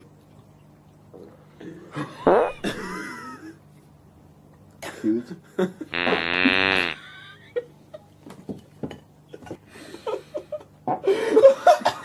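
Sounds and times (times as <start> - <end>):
loud buzzing fart: 2.2 - 2.9, 5.9 - 7.1.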